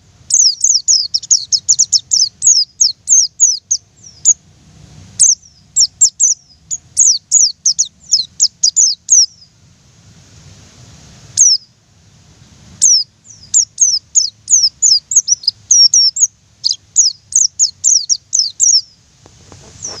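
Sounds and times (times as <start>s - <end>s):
bird singing high quick notes: 0.3s - 4.4s, 5.2s - 9.5s, 11.4s - 11.7s, 12.8s - 19.0s.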